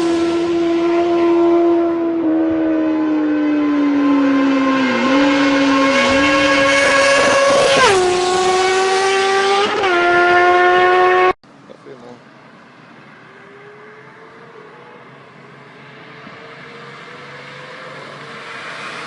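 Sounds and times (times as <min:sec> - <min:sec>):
motorcycle engine revving high: 0:00.0 - 0:11.4.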